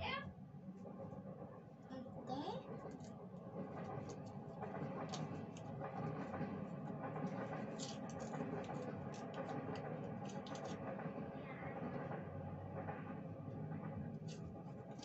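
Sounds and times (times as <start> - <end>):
low background hum: 0.0 - 15.0
small objects clicking and tapping: 7.2 - 10.9.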